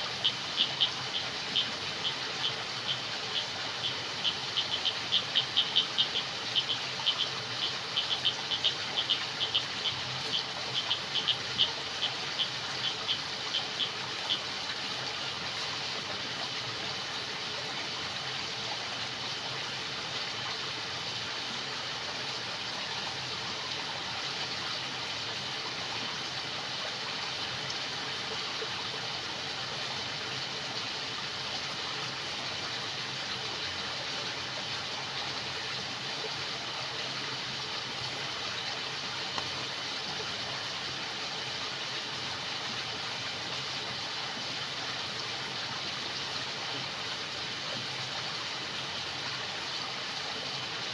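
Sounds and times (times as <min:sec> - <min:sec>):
crickets chirping: 0:00.0 - 0:17.6, 0:22.9 - 0:35.1, 0:37.7 - 0:42.4
frogs croaking: 0:00.0 - 0:35.8, 0:37.4 - 0:42.0
stream water rushing: 0:00.0 - 0:50.9.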